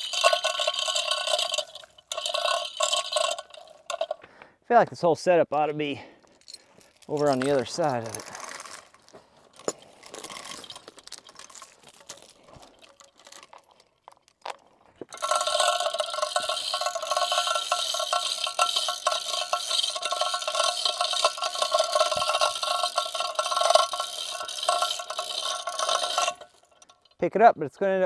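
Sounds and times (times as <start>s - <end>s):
chain clinking and rattling: 0.0s - 4.2s, 5.6s - 27.2s.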